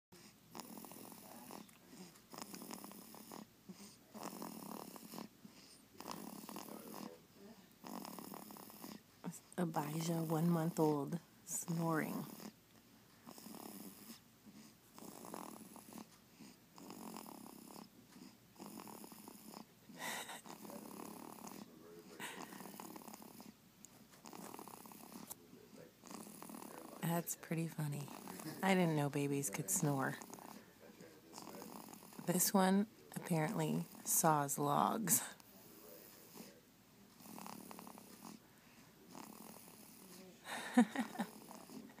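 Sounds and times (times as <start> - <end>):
baby snoring softly: 0.1 - 12.6, 13.2 - 28.9, 29.7 - 32.4, 33.2 - 34.2, 34.8 - 42.0
baby snort and grunt: 0.2 - 7.1, 13.3 - 23.6.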